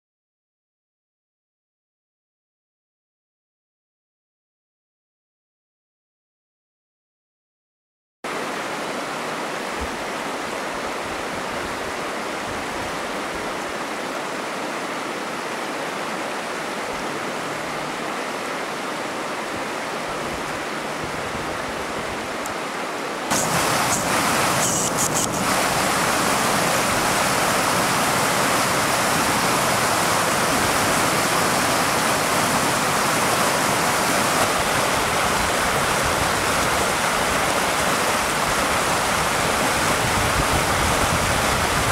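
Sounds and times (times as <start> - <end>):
snowstorm wind rushing: 23.3 - 41.9.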